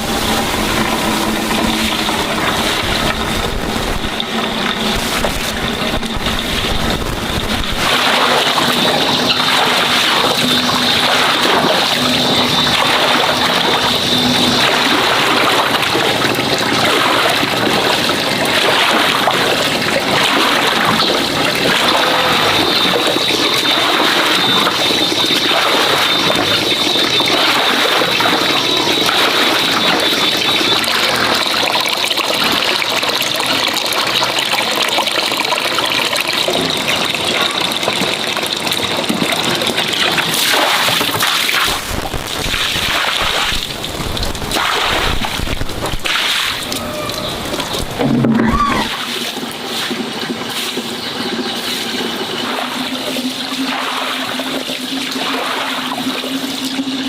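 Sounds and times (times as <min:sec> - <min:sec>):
water running and splashing: 0:00.0 - 0:57.0
faint high tone: 0:46.6 - 0:49.0.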